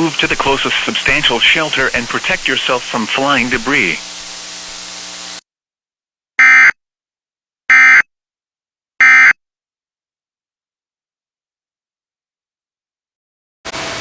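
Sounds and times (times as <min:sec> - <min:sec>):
broadcast hiss: 0:00.0 - 0:05.4, 0:13.7 - 0:14.0
buzzy electronic data bursts: 0:00.0 - 0:05.4.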